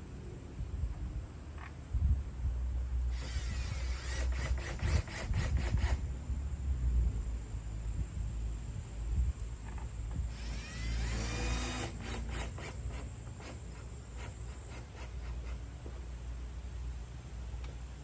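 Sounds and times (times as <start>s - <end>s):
steady low rumble: 0.0s - 14.5s
plastic scraping with squeaks: 11.8s - 15.7s.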